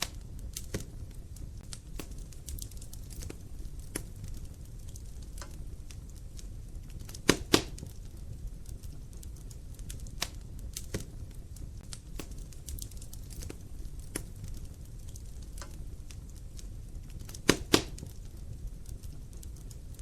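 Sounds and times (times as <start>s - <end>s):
fire crackling: 0.0s - 20.0s
low fire rumble: 0.0s - 20.0s
loud wood pops: 7.1s - 7.9s, 17.3s - 18.2s.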